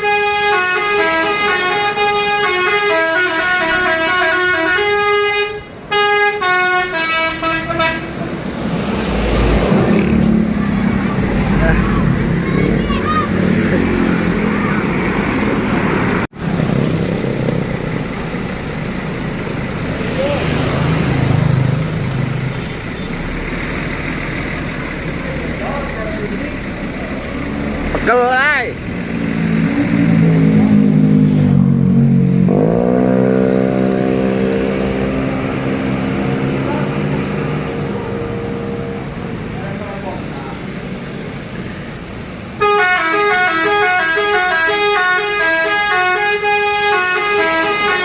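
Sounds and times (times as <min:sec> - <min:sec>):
multi-tone bus air horn: 0:00.0 - 0:08.3, 0:42.6 - 0:48.0
vehicle engines and road noise: 0:00.0 - 0:48.0.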